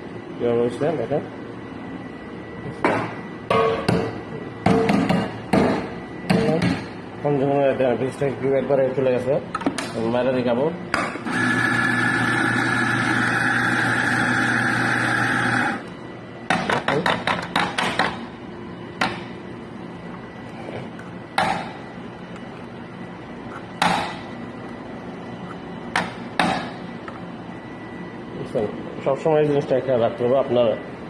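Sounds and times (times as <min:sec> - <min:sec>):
coffee machine humming: 0:10.4 - 0:28.7.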